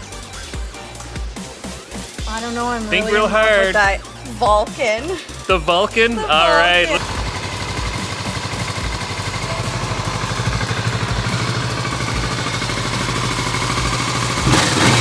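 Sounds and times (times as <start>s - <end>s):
motorcycle engine running: 5.3s - 15.0s.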